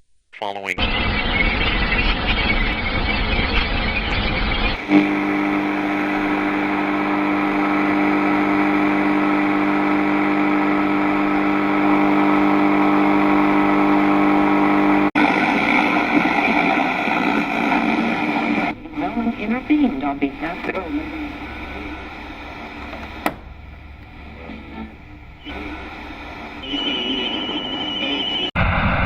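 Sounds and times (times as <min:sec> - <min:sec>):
buzzing electronic drone: 0:00.8 - 0:29.0
noisy hiss: 0:15.6 - 0:29.0.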